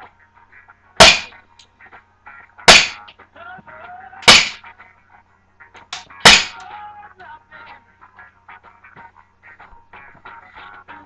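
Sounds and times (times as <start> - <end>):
airsoft pistol shots cracking: 1.0 - 1.3, 2.7 - 3.1, 4.2 - 4.6, 6.2 - 6.6.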